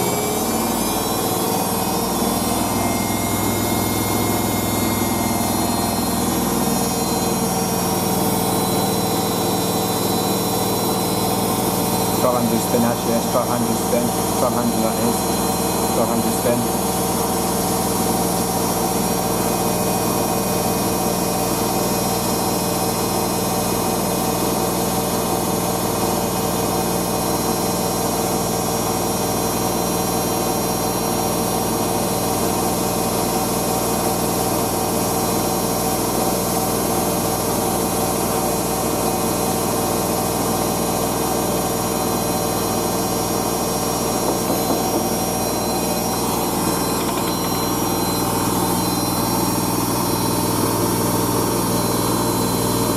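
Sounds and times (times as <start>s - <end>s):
washing machine spinning: 0.0s - 52.9s.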